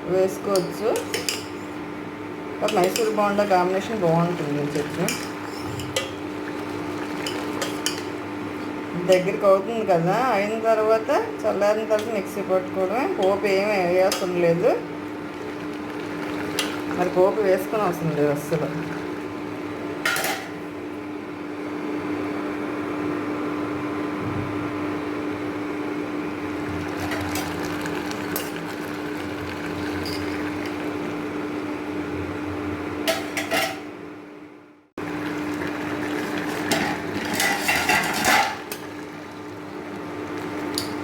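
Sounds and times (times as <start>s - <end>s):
steady hum and hiss: 0.0s - 41.0s
metal spoon scraping a pan: 5.0s - 6.1s.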